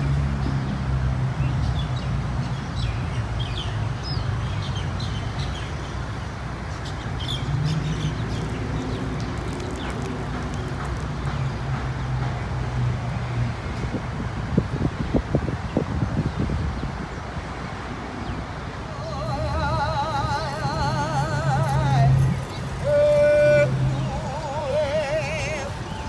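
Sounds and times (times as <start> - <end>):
low rumble of traffic: 0.0 - 26.0
small birds chirping: 6.7 - 12.3.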